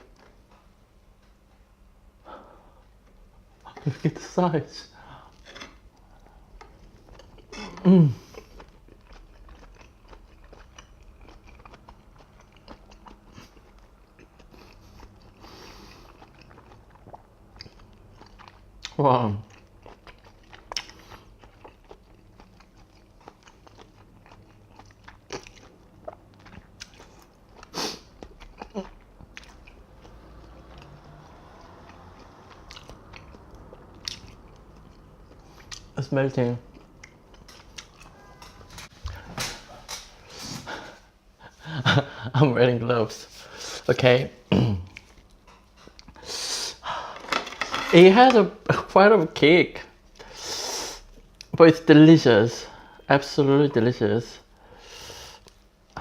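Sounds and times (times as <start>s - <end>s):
person chewing wetly: 5.3s - 36.0s, 36.6s - 39.2s.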